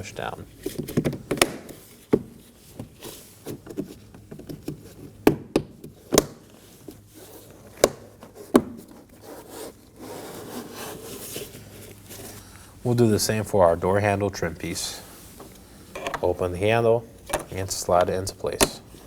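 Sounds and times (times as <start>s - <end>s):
plastic rubbing and scraping: 6.6s - 12.4s.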